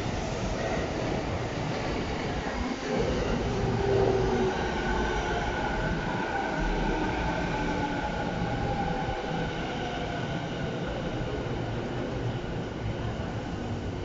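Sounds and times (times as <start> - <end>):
electric train rumbling: 0.0 - 14.0.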